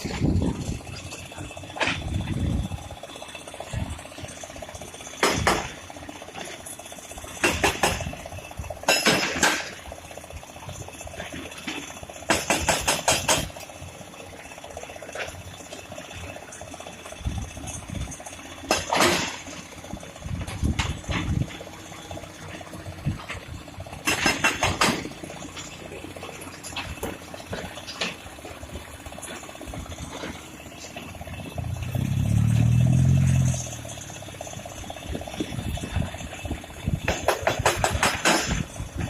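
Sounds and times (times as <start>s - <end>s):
excavator engine drone: 0.0s - 39.0s
metallic clanking and knocking: 5.0s - 9.9s, 11.2s - 13.7s, 16.5s - 39.0s.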